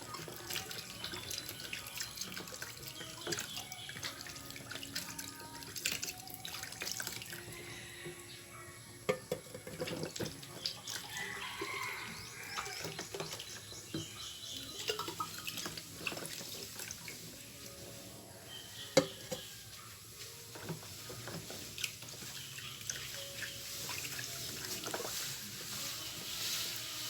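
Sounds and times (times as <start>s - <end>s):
water running at a sink: 0.0s - 7.6s, 9.6s - 17.3s, 20.6s - 25.5s
items clinking and knocking: 9.0s - 17.2s, 20.4s - 26.2s
water hissing: 9.9s - 19.6s, 20.6s - 27.0s.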